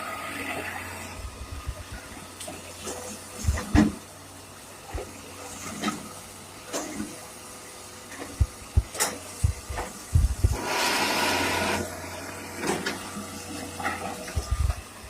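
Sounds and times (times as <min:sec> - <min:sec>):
excavator engine hum: 0:00.0 - 0:15.0
excavator clanks and thuds: 0:01.9 - 0:04.1, 0:04.9 - 0:07.2, 0:08.1 - 0:10.6, 0:12.5 - 0:14.9.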